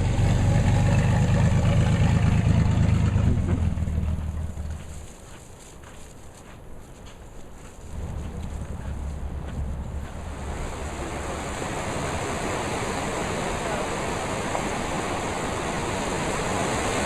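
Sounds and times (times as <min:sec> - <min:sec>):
wind: 0:00.0 - 0:17.0
sea water rushing: 0:07.8 - 0:17.0.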